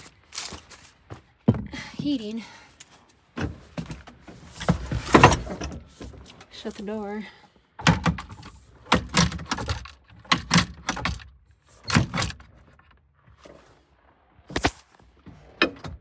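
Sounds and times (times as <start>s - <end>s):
clunks and knocks in cab: 1.5s - 1.9s, 3.4s - 6.3s, 7.8s - 13.0s, 15.3s - 16.0s
tractor cab door shutting: 3.4s - 6.5s, 7.8s - 12.9s, 14.5s - 16.0s.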